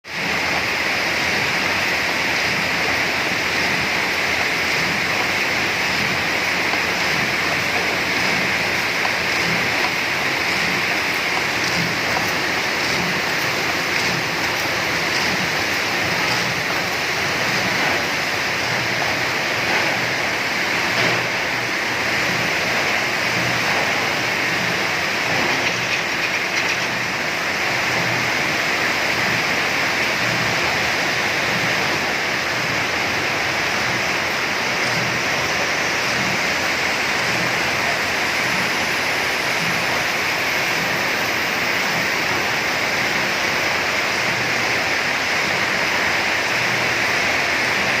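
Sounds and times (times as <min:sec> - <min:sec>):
wire netting machine clattering: 0:25.2 - 0:27.2.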